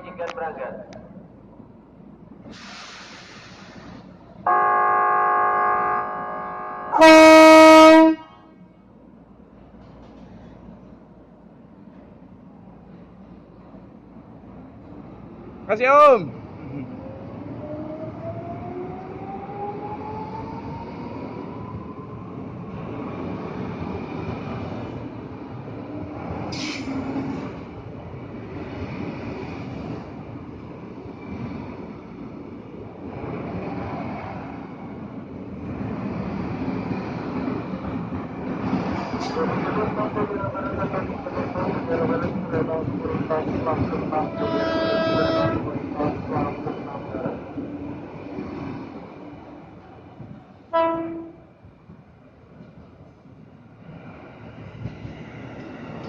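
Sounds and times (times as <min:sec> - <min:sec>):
brief hiss: 0:02.5 - 0:04.1, 0:26.5 - 0:27.0
train electric horn: 0:04.5 - 0:08.6, 0:44.3 - 0:45.7, 0:50.7 - 0:51.5
train wheels rumbling: 0:08.8 - 0:56.0.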